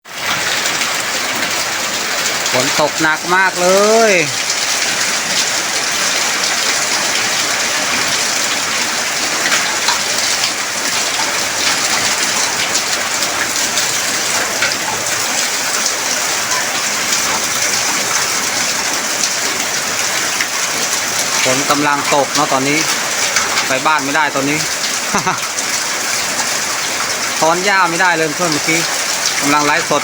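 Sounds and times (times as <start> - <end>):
heavy rain pouring: 0.0 - 30.0
raindrops ticking: 0.1 - 30.0.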